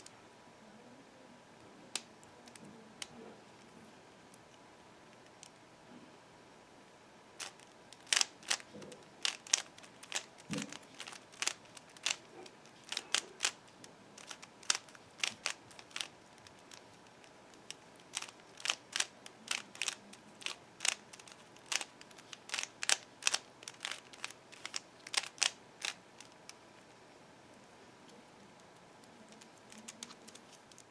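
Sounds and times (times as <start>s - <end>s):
puzzle cube clicking: 7.4s - 13.6s, 14.2s - 26.5s, 28.6s - 30.9s.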